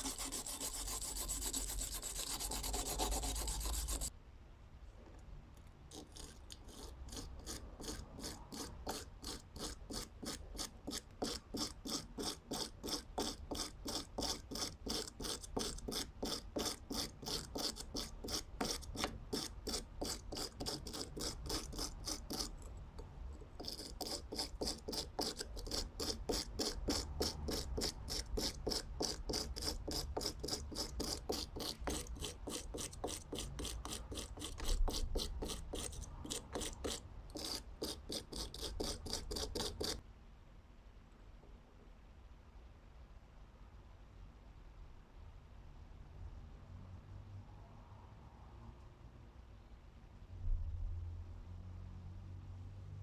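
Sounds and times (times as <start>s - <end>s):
file rasping on screwdriver: 0.0s - 4.1s, 5.9s - 40.0s.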